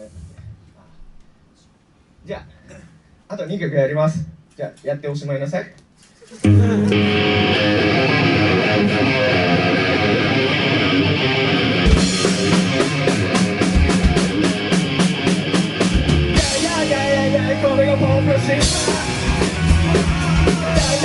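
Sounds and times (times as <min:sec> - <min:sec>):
distorted electric guitars: 0:06.4 - 0:21.0
drum kit playing: 0:06.4 - 0:21.0.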